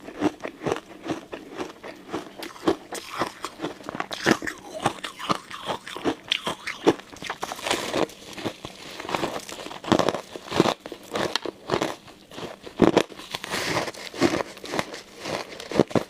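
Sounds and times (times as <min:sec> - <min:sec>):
ice crunching in mouth: 0:00.0 - 0:16.0.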